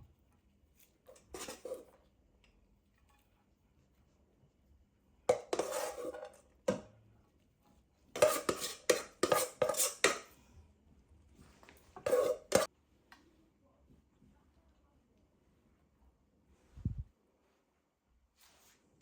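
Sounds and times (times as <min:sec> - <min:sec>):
dishes and cutlery clattering: 0:05.3 - 0:06.8, 0:08.2 - 0:10.3, 0:12.0 - 0:12.7.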